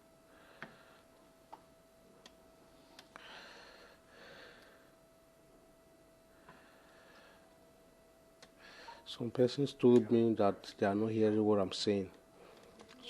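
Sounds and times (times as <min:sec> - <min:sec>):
faint electrical hum: 0:00.0 - 0:13.0
soft breathing: 0:00.3 - 0:01.2, 0:02.7 - 0:05.0, 0:06.3 - 0:07.6, 0:08.6 - 0:09.1, 0:12.3 - 0:12.9.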